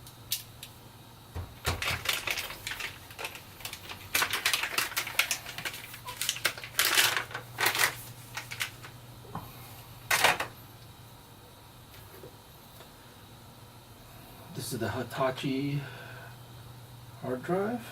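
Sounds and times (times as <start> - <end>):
packaging crinkling: 1.6 - 9.0.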